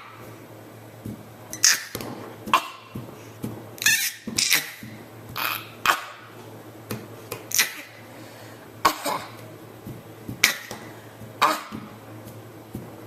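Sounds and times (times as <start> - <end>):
short sharp coughs: 8.8 - 9.4, 11.4 - 11.9.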